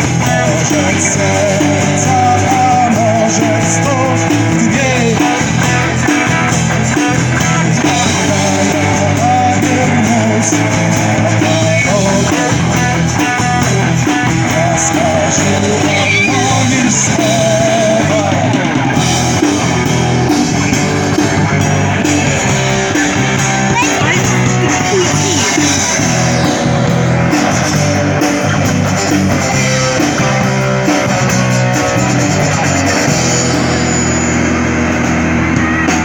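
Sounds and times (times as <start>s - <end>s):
person singing: 0.0s - 6.4s, 7.4s - 18.8s, 22.0s - 26.5s
rock band playing: 0.0s - 36.0s.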